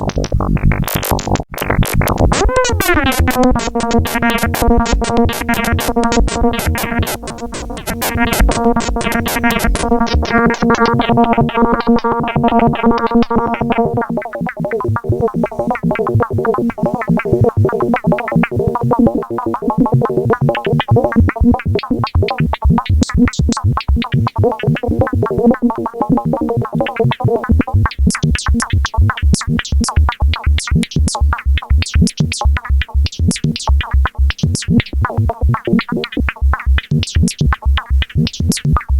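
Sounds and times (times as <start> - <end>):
high clicks: 0.1 - 10.4
short plucked synth pulses: 1.5 - 16.1
low kick drum beat: 27.8 - 38.9.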